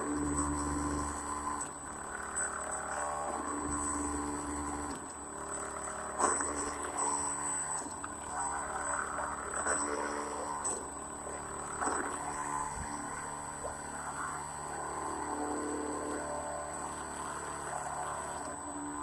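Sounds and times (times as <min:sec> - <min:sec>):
electric motor whine: 0:00.0 - 0:19.0.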